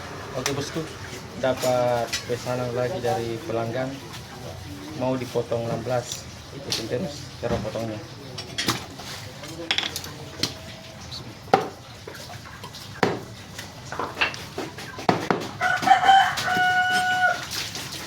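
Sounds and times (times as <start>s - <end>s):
rooster crowing: 15.6s - 17.7s.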